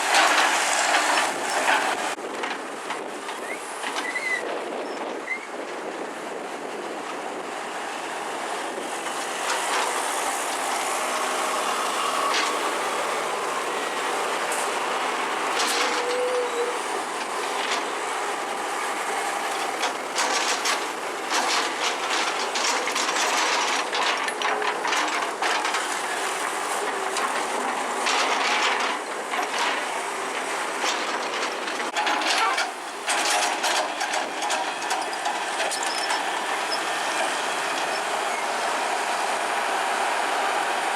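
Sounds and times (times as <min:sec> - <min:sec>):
excavator mechanical noise: 0:00.0 - 0:40.9
metallic clanking and clattering: 0:15.5 - 0:18.5, 0:19.5 - 0:36.3.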